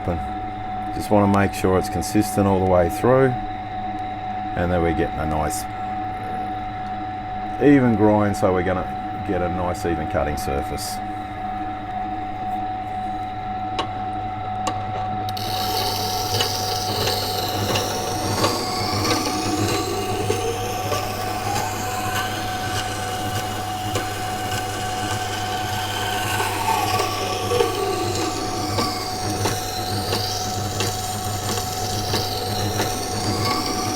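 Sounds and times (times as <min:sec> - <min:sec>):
electric grinder humming: 0:15.3 - 0:33.9
faint sliding tones: 0:15.3 - 0:33.9.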